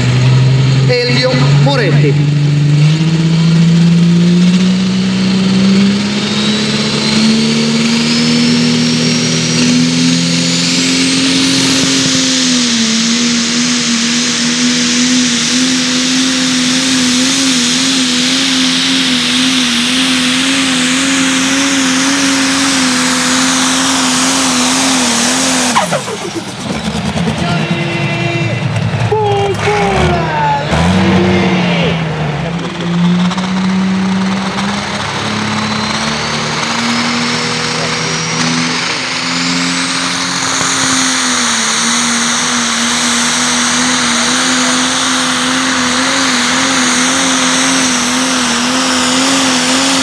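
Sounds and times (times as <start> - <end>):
tractor diesel engine running flat out: 0.0 - 50.0
turbo whistle: 22.3 - 27.8.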